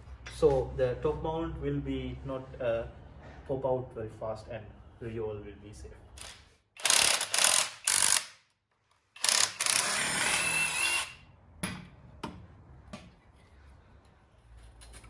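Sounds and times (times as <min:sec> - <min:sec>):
power tool running: 0:06.2 - 0:08.3, 0:09.2 - 0:11.2.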